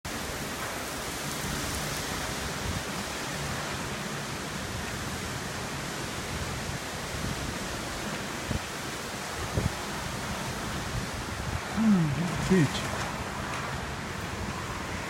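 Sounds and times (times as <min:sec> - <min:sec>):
storm wind and rain: 0:00.0 - 0:15.0
wind buffeting microphone: 0:04.6 - 0:15.0.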